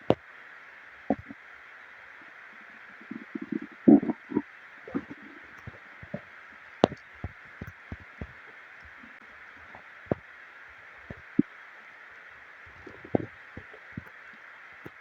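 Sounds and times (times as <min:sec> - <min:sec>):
steady hiss: 0:00.0 - 0:15.0
stomach gurgling: 0:01.1 - 0:01.4, 0:02.6 - 0:10.3, 0:11.0 - 0:11.6, 0:12.6 - 0:15.0.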